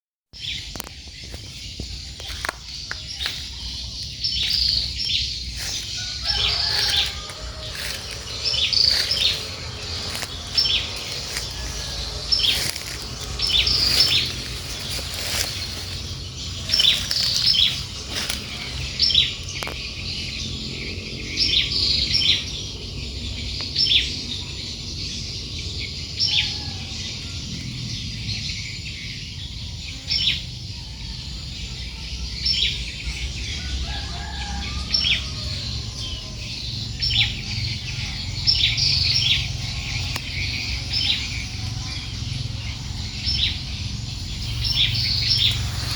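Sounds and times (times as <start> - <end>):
bird chirping: 0.4 - 26.8, 27.8 - 45.9.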